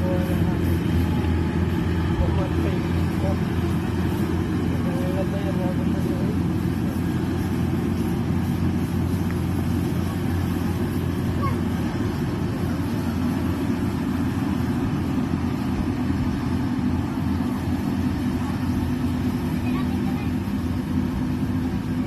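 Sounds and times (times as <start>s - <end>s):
harvester engine droning: 0.0s - 22.0s.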